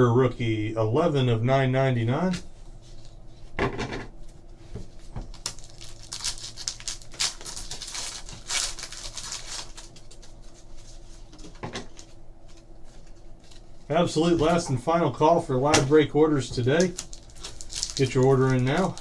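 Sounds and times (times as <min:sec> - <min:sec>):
faint steady hum: 0:00.0 - 0:19.0
card packs tearing and rustling: 0:05.3 - 0:10.6, 0:15.8 - 0:19.0.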